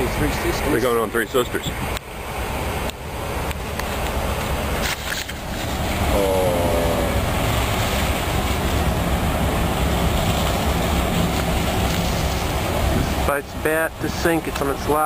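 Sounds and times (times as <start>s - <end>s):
boat engine rumble: 0.0s - 15.0s.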